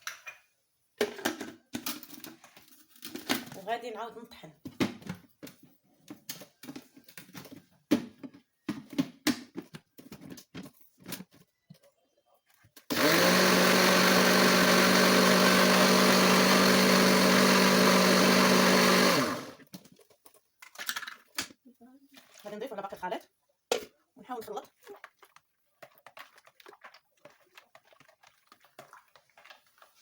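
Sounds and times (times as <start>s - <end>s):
electric blender running: 12.9s - 19.6s.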